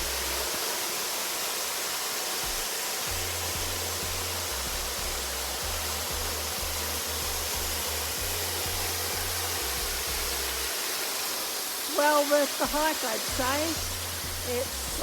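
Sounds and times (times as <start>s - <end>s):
low bass line music: 0.0s - 0.5s, 3.1s - 10.7s, 13.3s - 15.0s
waterfall rushing: 0.0s - 15.0s.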